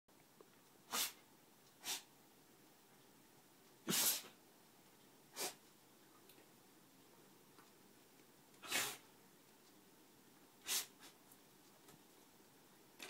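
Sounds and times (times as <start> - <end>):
dog sneezing: 0.9 - 1.2, 1.8 - 2.1, 3.8 - 4.4, 5.3 - 5.6, 8.6 - 9.0, 10.6 - 11.2.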